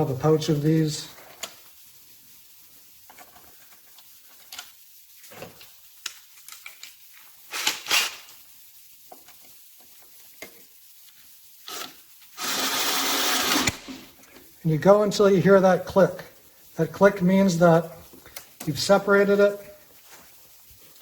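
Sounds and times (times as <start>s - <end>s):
rustle: 16.2s - 21.0s.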